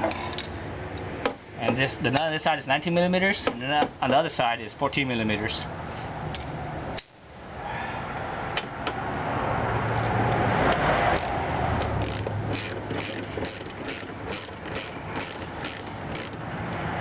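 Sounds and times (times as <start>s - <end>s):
socket ratchet clicking: 11.2s - 16.4s.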